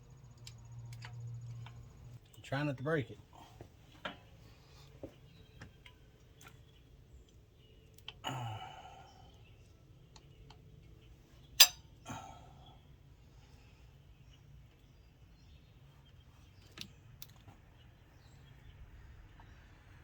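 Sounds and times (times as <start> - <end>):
metallic clicks and clinks: 11.6 - 11.8
sharp metal click: 11.6 - 11.8.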